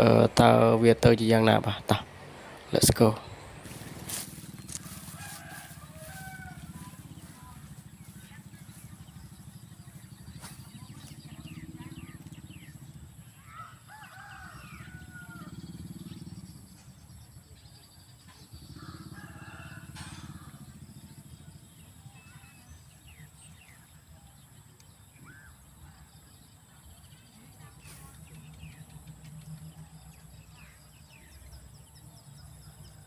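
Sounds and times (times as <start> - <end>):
low rumble: 0.0 - 13.4
small birds chirping: 2.6 - 33.0
rooster crowing: 4.7 - 7.2, 13.5 - 15.6, 18.8 - 20.6.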